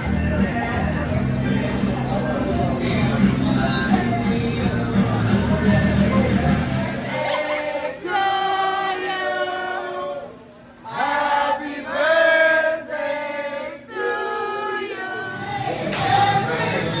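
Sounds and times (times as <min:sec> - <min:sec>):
choir singing in harmony: 0:10.8 - 0:17.0.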